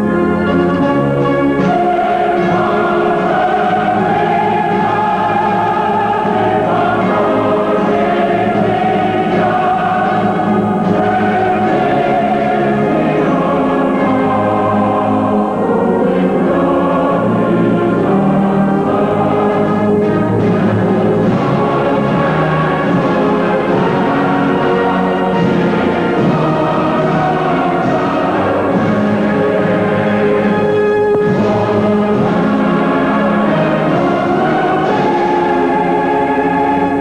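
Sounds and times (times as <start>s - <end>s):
choir singing: 0.0s - 37.0s.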